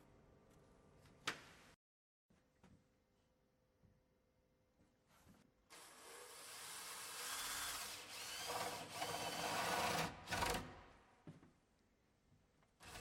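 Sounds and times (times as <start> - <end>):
power drill boring wood: 5.8 - 10.6.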